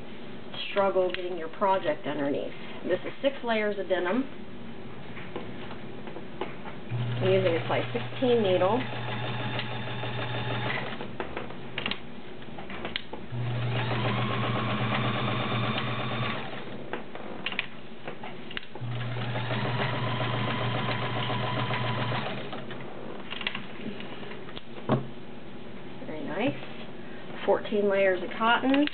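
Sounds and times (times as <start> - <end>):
sewing machine stitching: 6.9 - 11.0, 13.3 - 16.7, 18.8 - 22.6.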